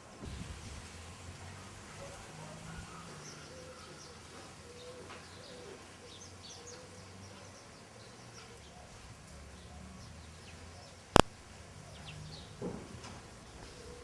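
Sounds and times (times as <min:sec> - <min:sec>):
dove cooing: 0:01.9 - 0:07.5
small birds chirping: 0:02.0 - 0:12.6.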